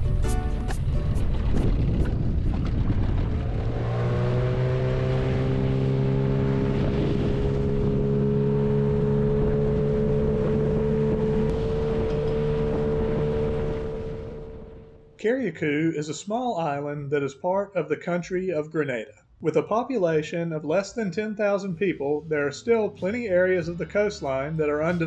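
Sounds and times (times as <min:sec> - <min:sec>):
outboard motor running: 0:06.3 - 0:15.1.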